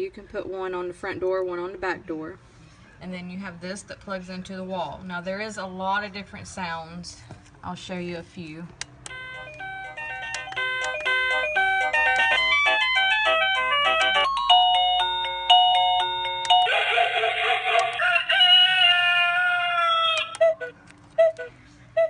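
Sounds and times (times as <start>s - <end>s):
electronic doorbell melody: 9.1s - 17.8s
recorded animal call: 16.6s - 21.4s.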